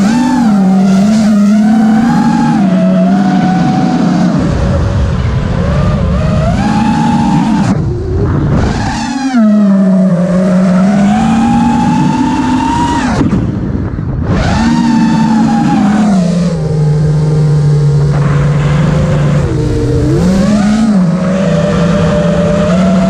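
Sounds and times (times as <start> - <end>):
quadcopter motors whining: 0.0 - 13.5, 14.3 - 23.0.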